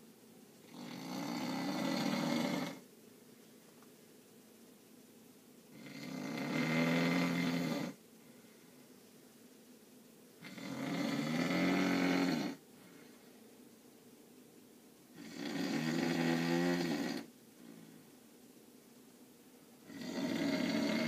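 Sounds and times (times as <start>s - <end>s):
person snoring: 0.6s - 2.8s, 5.7s - 8.0s, 10.4s - 12.6s, 15.2s - 17.8s, 19.8s - 21.0s
quiet breathing: 5.7s - 14.3s, 15.0s - 21.0s.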